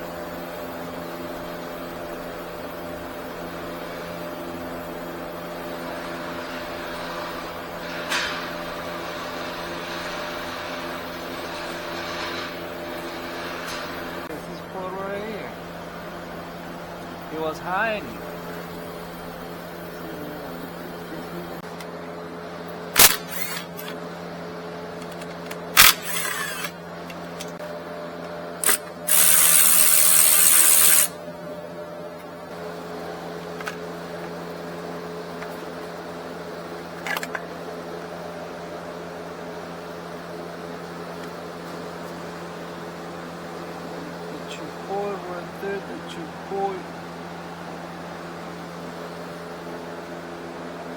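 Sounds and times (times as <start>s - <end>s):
steady machine hum: 0.0s - 50.9s
hiss: 29.1s - 31.1s.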